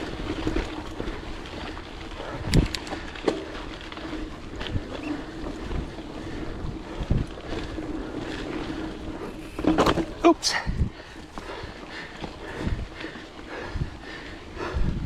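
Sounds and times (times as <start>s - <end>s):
bike clacking and rattling: 0.0s - 13.2s
bike tyres rolling on dirt: 0.0s - 15.0s
wind on microphone: 4.3s - 15.0s.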